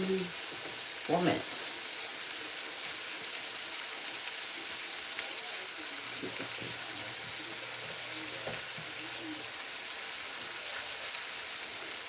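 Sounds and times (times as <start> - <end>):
cabbage sizzling in a skillet: 0.0 - 12.0.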